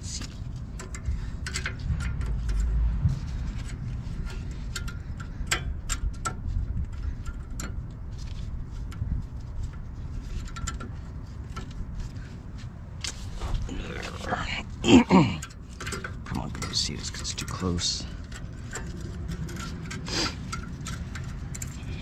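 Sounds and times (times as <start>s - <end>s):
low rumble: 0.0s - 7.2s.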